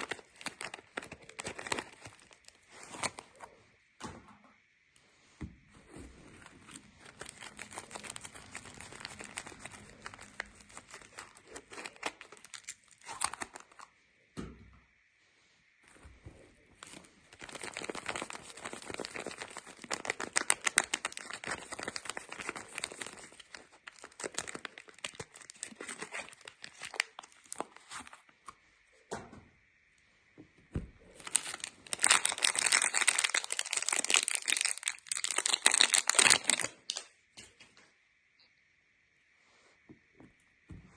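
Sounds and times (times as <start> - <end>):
wrapper crinkling and tearing: 0.0 - 3.5, 6.4 - 13.9, 16.8 - 28.2, 31.2 - 37.1.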